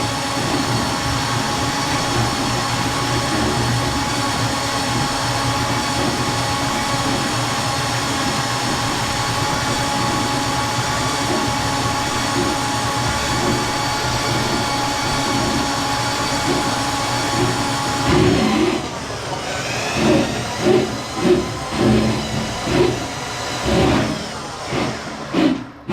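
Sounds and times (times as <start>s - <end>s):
drain snake motor hum: 0.0s - 25.9s.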